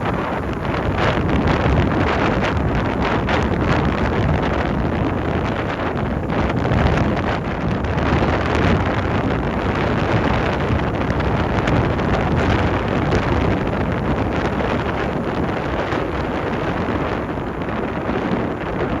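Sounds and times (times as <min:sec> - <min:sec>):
roar of surf: 0:00.0 - 0:19.0
wind buffeting microphone: 0:00.0 - 0:19.0.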